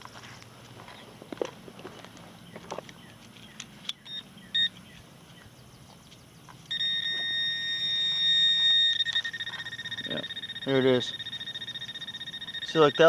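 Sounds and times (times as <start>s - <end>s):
short beeps: 4.1s - 4.7s, 6.7s - 13.0s
high continuous alert tone: 6.7s - 13.0s.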